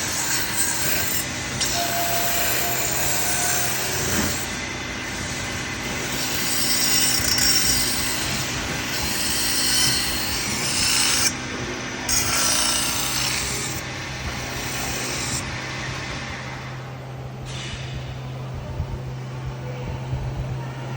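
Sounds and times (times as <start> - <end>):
lathe motor hum: 0.0 - 17.4.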